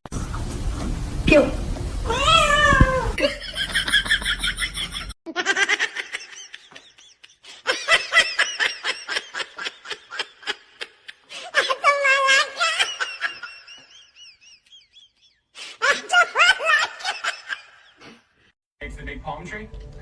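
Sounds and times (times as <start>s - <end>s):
high-pitched laughter: 3.2s - 18.0s.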